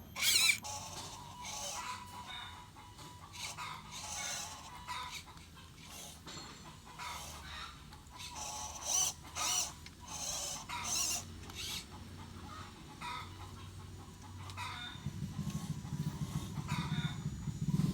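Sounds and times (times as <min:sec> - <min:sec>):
low pulsing buzz: 0:14.9 - 0:17.9.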